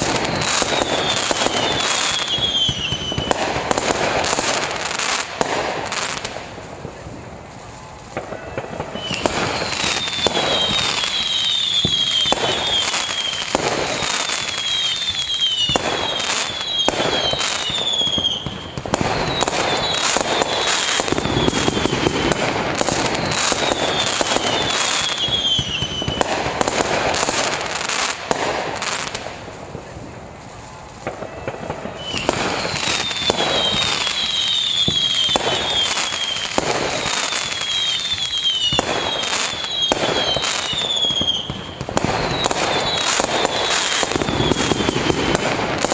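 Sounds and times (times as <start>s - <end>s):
fireworks bangs and crackling: 0.0s - 45.9s
short falling whistles: 9.0s - 13.5s, 32.0s - 41.5s.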